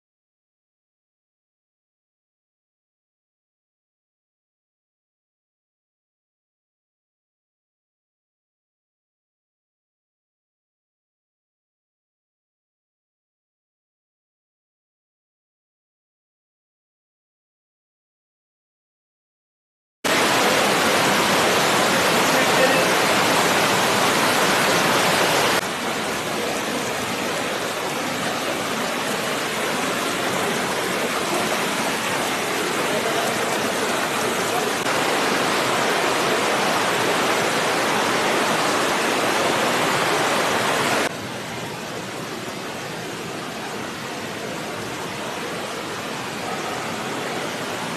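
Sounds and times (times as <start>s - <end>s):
water surging from spring: 20.1s - 47.9s.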